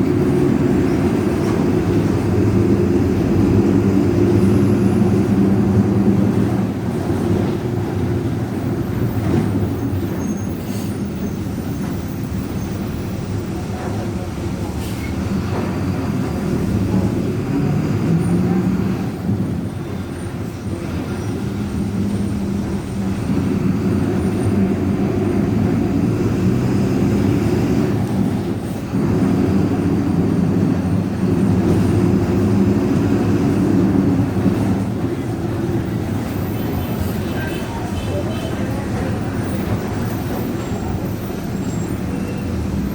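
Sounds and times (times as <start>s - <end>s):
bus diesel engine running: 0.0s - 42.9s.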